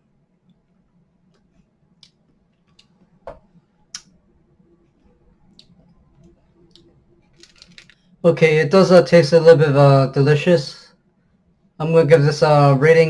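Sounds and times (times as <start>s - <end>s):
low room hum: 0.0s - 13.0s
faint clicks and ticks: 0.4s - 4.2s, 4.8s - 8.2s.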